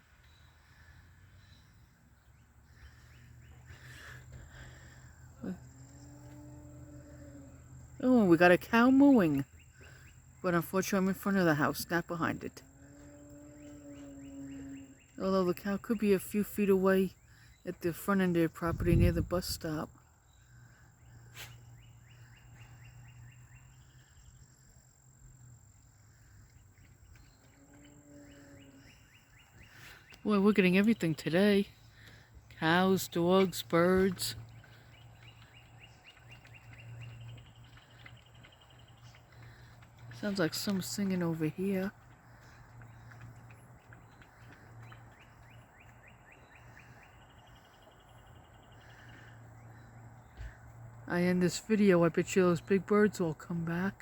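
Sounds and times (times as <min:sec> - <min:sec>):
songbird singing: 0:00.0 - 0:54.0
distant cow mooing: 0:05.6 - 0:07.8, 0:12.6 - 0:15.0, 0:27.5 - 0:29.0.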